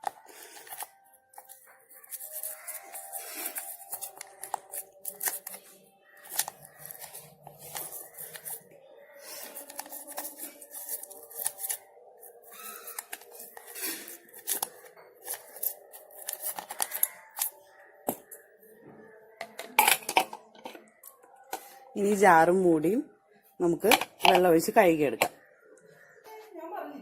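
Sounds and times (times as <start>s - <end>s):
toothbrush scrubbing jar: 0.0s - 5.6s, 6.2s - 8.7s, 9.3s - 17.5s.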